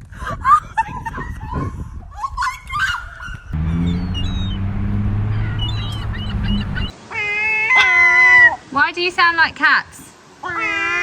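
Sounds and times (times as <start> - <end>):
steady low drone: 3.6 - 6.9
gulls calling: 3.6 - 8.7
faint high chirps: 3.7 - 6.9.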